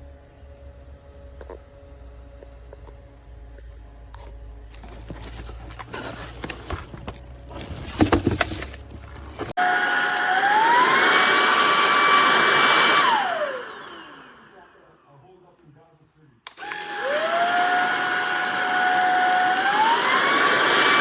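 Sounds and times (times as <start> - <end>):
stick vacuum motor whine: 9.5 - 14.9, 16.5 - 21.0.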